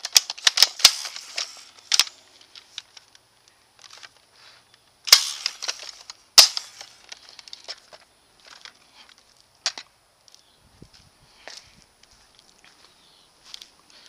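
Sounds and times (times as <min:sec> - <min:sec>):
airsoft rifle shots: 0:00.0 - 0:02.2, 0:05.1 - 0:07.0.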